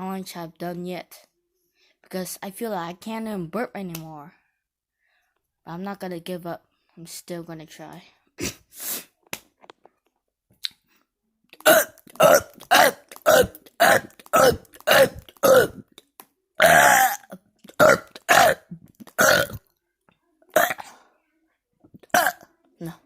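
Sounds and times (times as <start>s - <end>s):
man burping: 11.6s - 15.8s, 16.6s - 19.6s, 20.6s - 20.9s, 22.1s - 22.4s.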